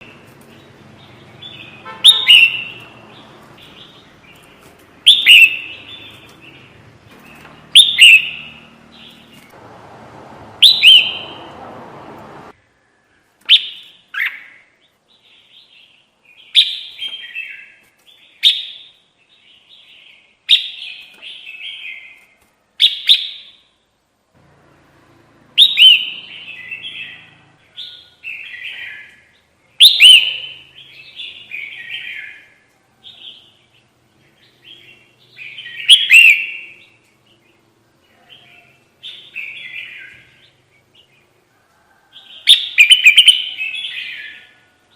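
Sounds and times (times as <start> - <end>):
bulbul singing: 0.0 - 9.6, 10.4 - 12.6, 25.1 - 41.4, 42.4 - 44.6.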